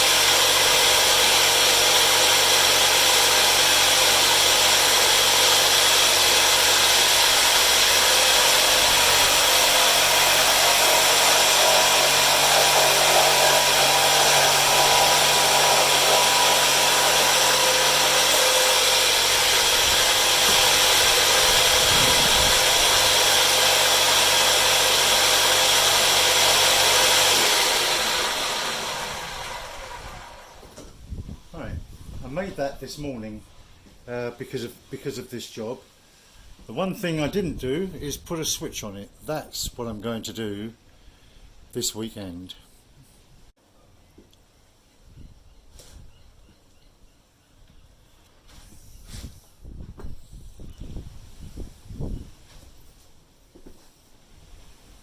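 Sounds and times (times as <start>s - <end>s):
power tool motor running: 0.0s - 30.8s.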